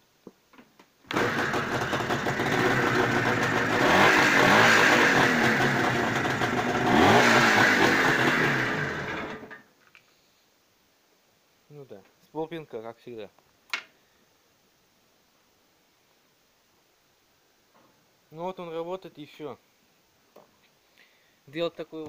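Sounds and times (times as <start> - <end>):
two-stroke motorcycle engine revving: 1.1 - 9.6.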